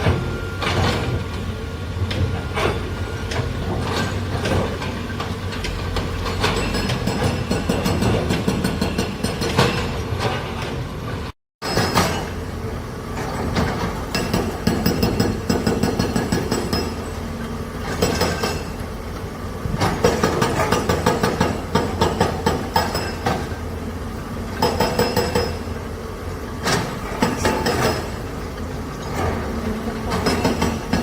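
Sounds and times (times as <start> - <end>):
heavy machine engine droning: 0.0 - 8.6, 10.0 - 31.0
metallic clanking and rattling: 2.3 - 10.7.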